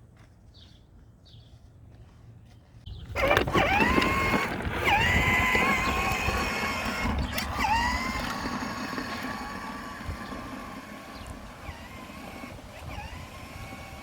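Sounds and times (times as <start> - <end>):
lawnmower engine running: 2.9 - 14.0.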